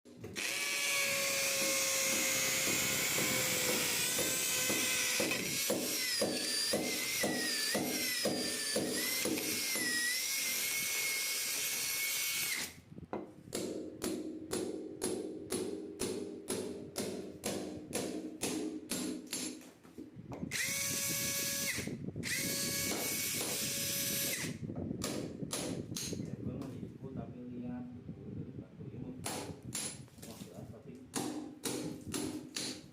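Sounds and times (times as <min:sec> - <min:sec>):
cordless drill motor whine: 0:00.3 - 0:12.8, 0:20.5 - 0:24.6.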